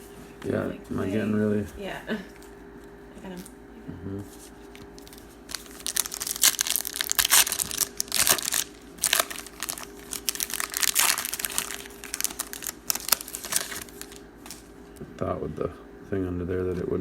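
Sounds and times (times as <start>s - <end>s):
plastic wrappers crinkling: 4.9s - 14.8s.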